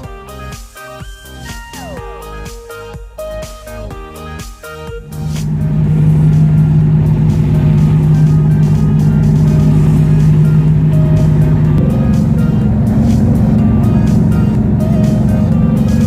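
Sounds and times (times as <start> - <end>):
music: 0.0 - 16.0
diesel engine running: 3.2 - 16.0.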